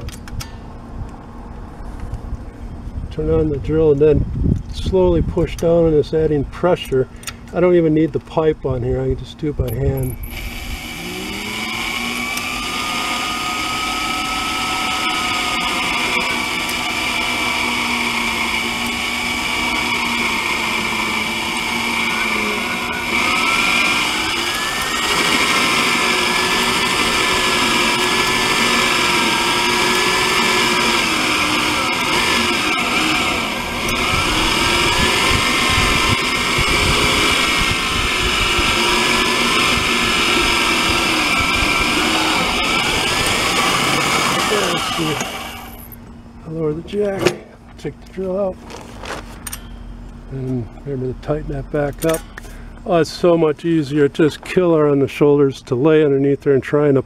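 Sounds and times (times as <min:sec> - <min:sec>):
electric drill boring sheet metal: 0:09.7 - 0:46.0.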